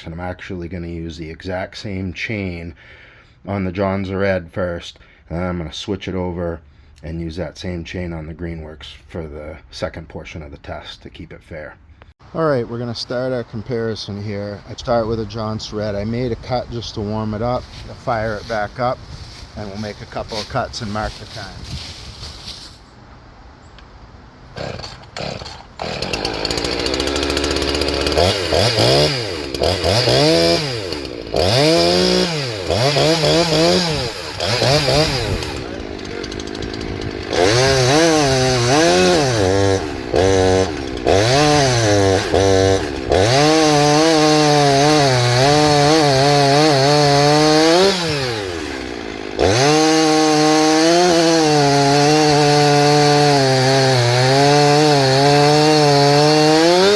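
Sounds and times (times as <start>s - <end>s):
chainsaw cutting wood: 24.5s - 56.9s
chainsaw revving: 24.5s - 56.9s
chainsaw pull-start: 24.6s - 56.9s.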